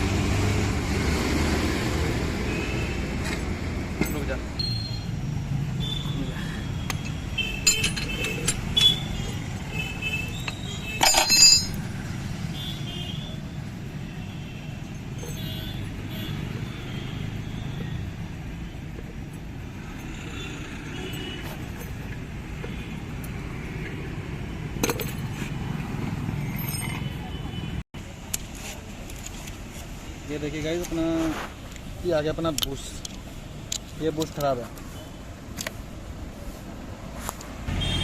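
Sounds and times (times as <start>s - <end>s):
metal tools clinking and clanking: 7.0s - 9.2s, 10.4s - 11.8s, 24.8s - 25.6s, 26.4s - 27.1s.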